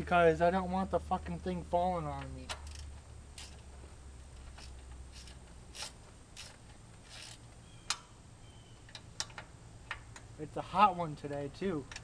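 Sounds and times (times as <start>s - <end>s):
steady low hum: 0.0s - 12.0s
light clicks taps and scrapes: 4.3s - 8.0s, 11.2s - 12.0s.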